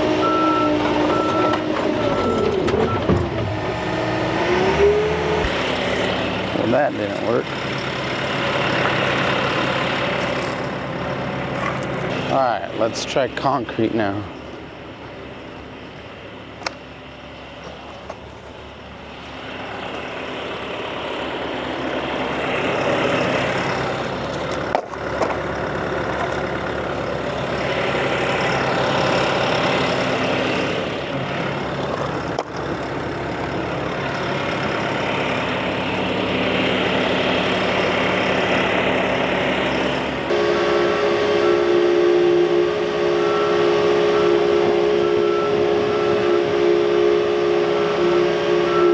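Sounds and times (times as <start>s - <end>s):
diesel engine revving: 0.0s - 48.9s
high hydraulic whine: 25.6s - 48.9s.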